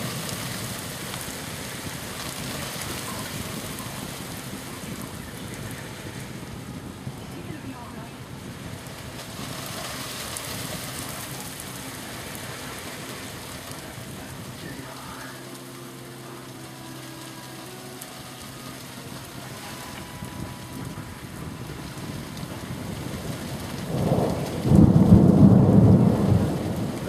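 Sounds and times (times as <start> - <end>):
steady rain falling: 0.0 - 27.0.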